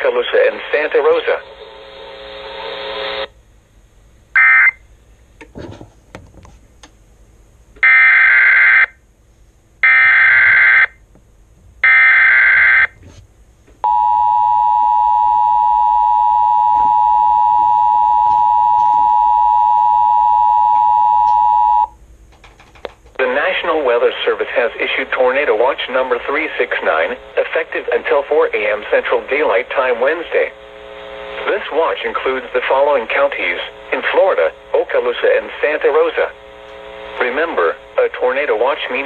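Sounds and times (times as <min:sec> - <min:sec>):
steady attention signal tone: 0:13.8 - 0:22.0.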